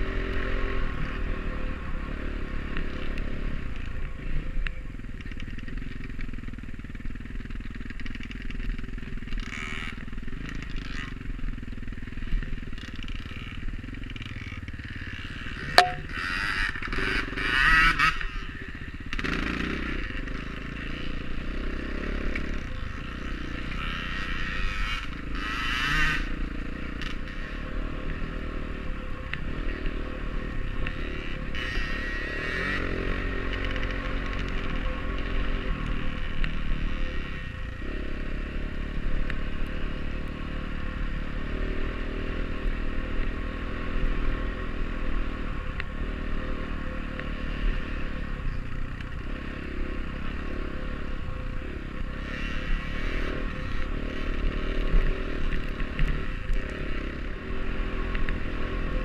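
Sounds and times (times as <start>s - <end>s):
dirt bike engine revving: 14.4s - 48.2s, 49.2s - 59.0s.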